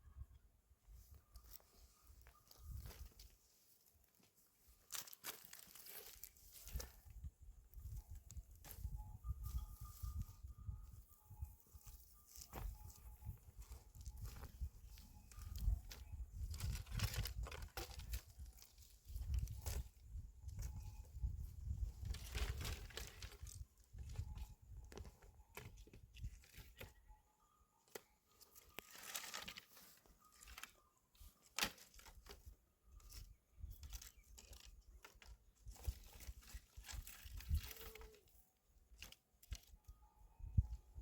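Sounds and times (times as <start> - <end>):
dry plants crunching and snapping: 4.8 - 7.0, 13.9 - 19.9, 22.0 - 24.2, 28.0 - 30.8, 31.4 - 38.3.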